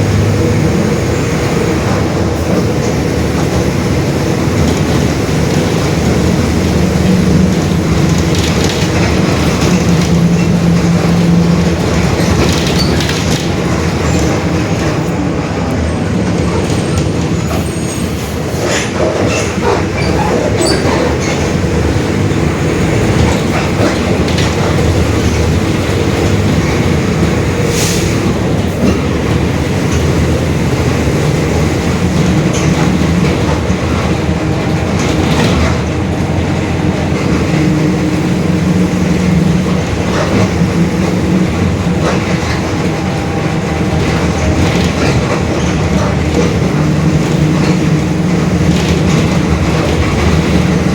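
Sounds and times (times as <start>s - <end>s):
bus engine droning: 0.0s - 50.9s
body rattles and knocks: 2.0s - 15.0s, 28.4s - 50.9s.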